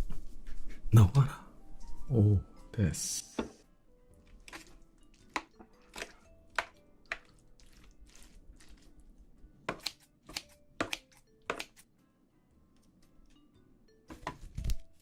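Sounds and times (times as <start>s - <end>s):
faint background music: 0.0s - 15.0s.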